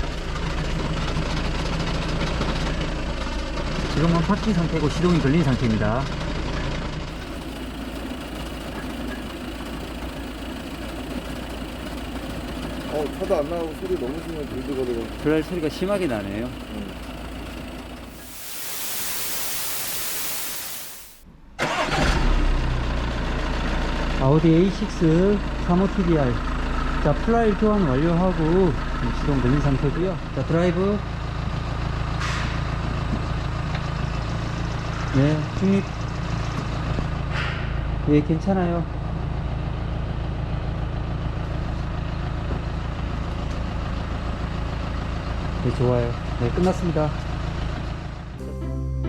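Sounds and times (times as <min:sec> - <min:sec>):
diesel engine idling: 0:00.0 - 0:04.3, 0:06.0 - 0:20.4, 0:38.9 - 0:49.0
bright even hiss: 0:18.1 - 0:21.2.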